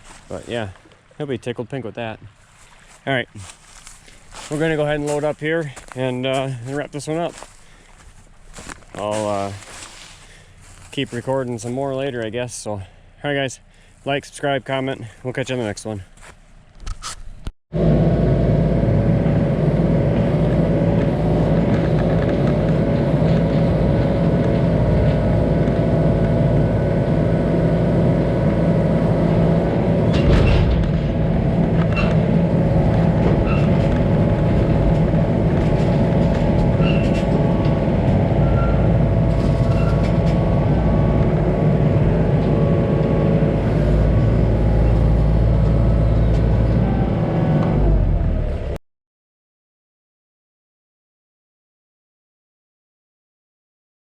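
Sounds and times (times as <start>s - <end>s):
diesel engine running: 2.4s - 16.8s, 17.7s - 48.8s.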